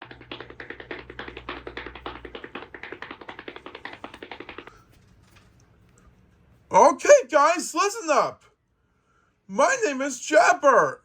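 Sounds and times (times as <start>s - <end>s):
fast run of short taps: 0.0s - 5.5s.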